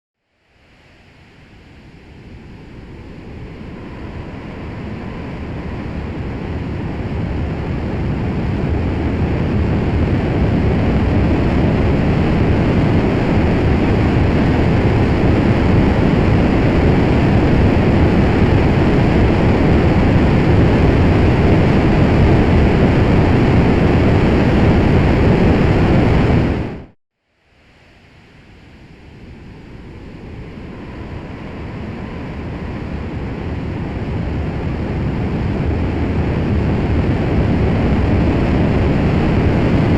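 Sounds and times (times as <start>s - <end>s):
rocket engine roaring: 1.0s - 26.9s, 28.5s - 39.9s.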